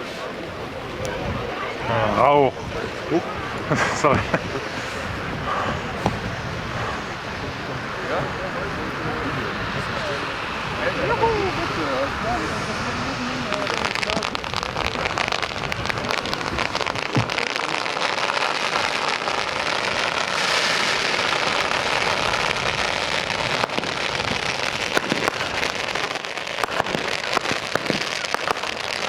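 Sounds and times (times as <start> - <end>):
fireworks crackling: 0.0 - 29.0
loud firework pops: 5.4 - 7.0, 13.4 - 29.0.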